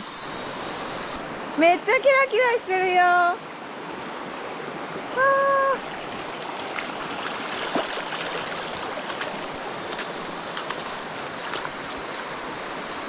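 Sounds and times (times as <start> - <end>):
stream running over rocks: 0.0 - 13.0
small sharp ticks and splashes: 5.8 - 13.0.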